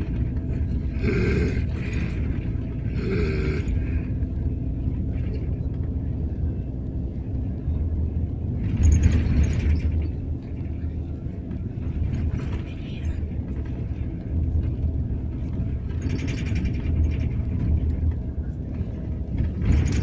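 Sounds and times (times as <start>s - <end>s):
bus engine drone: 0.0s - 20.0s
man snoring loudly: 1.0s - 1.9s.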